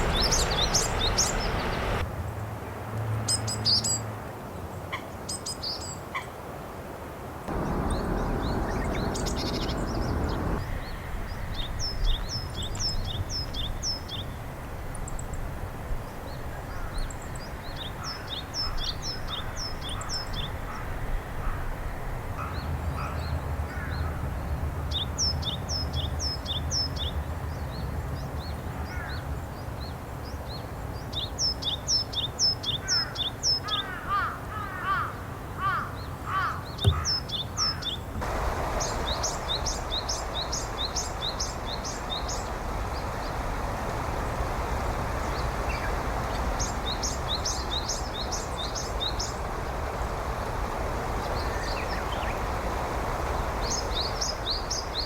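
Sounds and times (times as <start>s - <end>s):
lower quick bird calls: 7.5s - 10.6s
background hiss: 7.5s - 14.0s, 36.9s - 55.0s.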